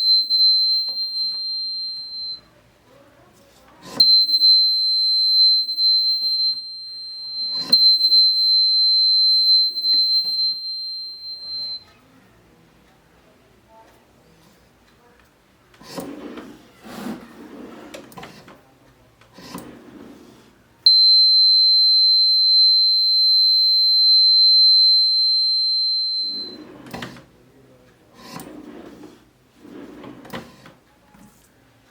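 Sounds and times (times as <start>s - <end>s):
electronic buzzer beep: 0.0s - 2.4s, 4.0s - 11.8s, 20.9s - 26.7s.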